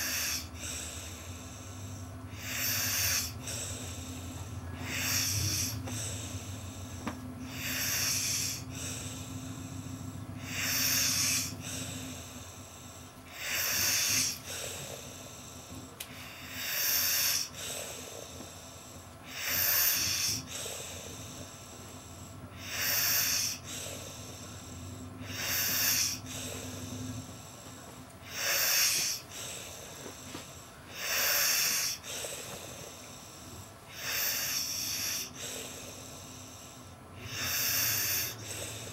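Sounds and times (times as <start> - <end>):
man snoring: 0.0 - 38.9.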